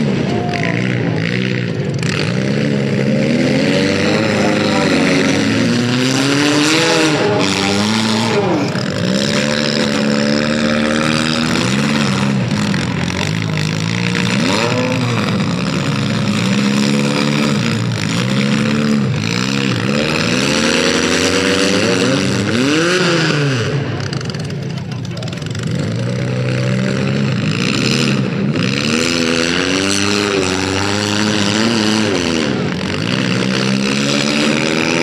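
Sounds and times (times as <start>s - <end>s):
car engines revving hard: 0.0s - 35.0s.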